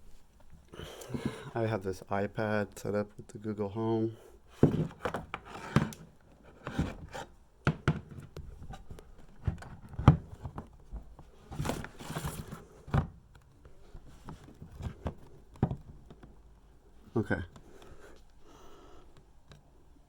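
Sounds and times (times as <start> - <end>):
handling clicks and knocks: 4.6 - 18.4.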